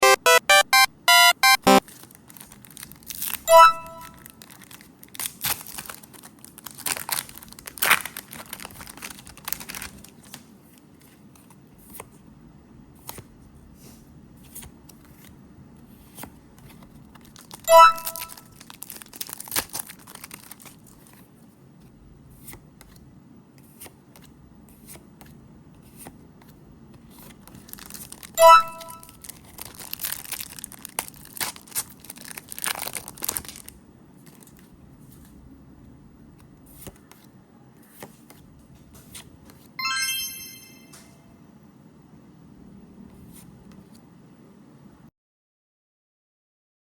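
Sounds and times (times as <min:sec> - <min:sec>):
foil wrappers tearing and crinkling: 0:01.8 - 0:03.5, 0:04.1 - 0:10.4, 0:17.0 - 0:21.2, 0:27.2 - 0:28.4, 0:29.0 - 0:34.7
cards rustling and clicking: 0:04.1 - 0:12.2, 0:13.9 - 0:23.0, 0:23.6 - 0:35.4
short bright chime: 0:28.4 - 0:29.0, 0:39.8 - 0:41.4.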